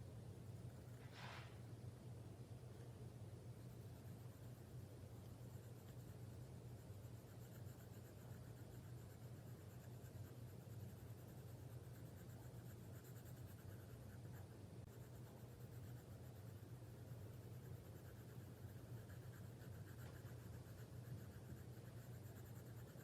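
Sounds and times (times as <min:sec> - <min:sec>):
steady low hum: 0:00.0 - 0:23.0
drawing tool scratching on paper: 0:05.3 - 0:23.0.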